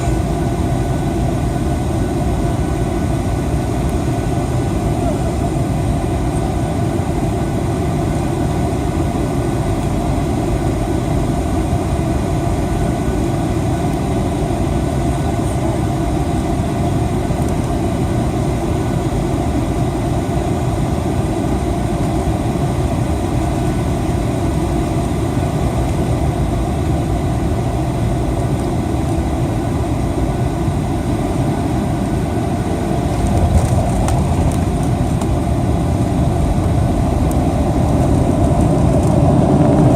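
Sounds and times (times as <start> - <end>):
faint steady whines: 0.0 - 39.9
jet engines at low power: 0.0 - 39.9.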